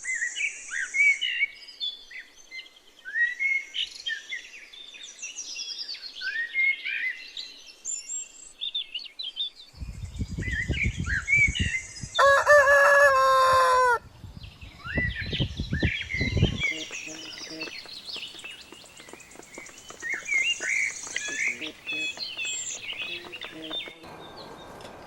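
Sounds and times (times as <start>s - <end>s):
rooster crowing: 12.2s - 14.0s
small birds chirping: 14.4s - 25.0s.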